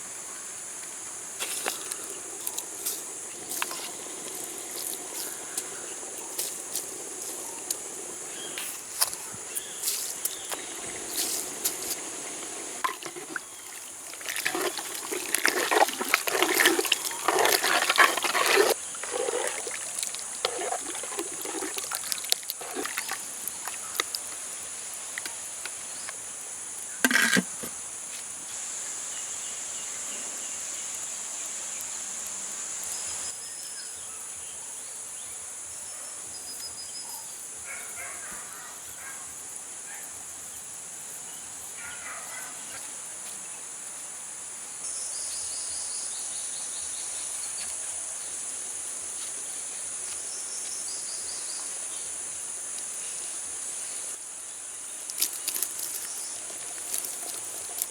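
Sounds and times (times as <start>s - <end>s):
insects shrilling: 0.0s - 31.9s, 44.9s - 57.9s
short insect chirps: 0.0s - 34.2s, 44.8s - 57.9s.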